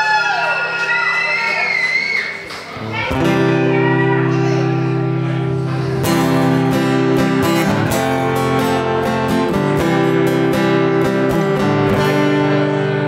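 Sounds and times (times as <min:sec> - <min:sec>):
acoustic guitar strumming chords: 0:02.8 - 0:13.0.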